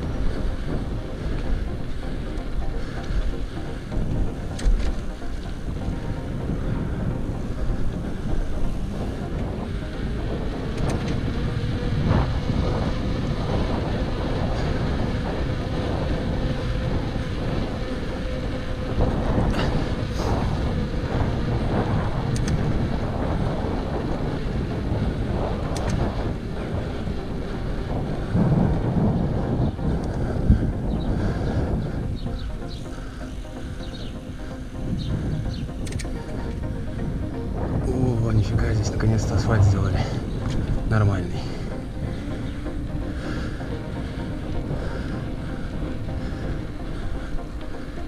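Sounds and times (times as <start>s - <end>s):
bicycle rumble: 0.0s - 48.0s
wind buffeting microphone: 0.0s - 48.0s.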